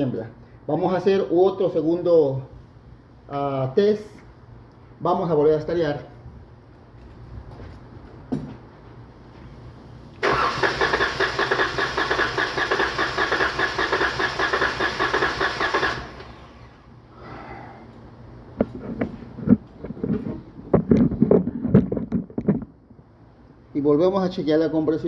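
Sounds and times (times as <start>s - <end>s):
starter cranking engine: 10.2s - 16.8s.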